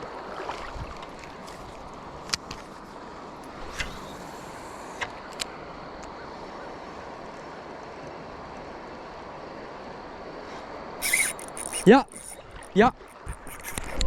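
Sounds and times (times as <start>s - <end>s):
brief sharp clicks: 11.0s - 14.0s.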